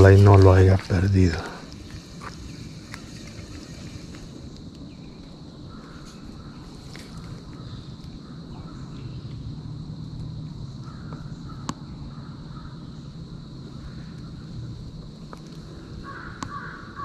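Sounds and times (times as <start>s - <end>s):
crows cawing: 5.7s - 9.0s, 10.8s - 13.0s, 15.8s - 17.0s.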